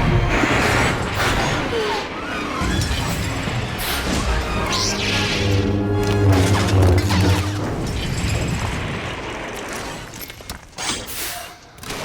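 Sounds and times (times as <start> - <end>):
orchestral music low tones: 3.8 - 8.4.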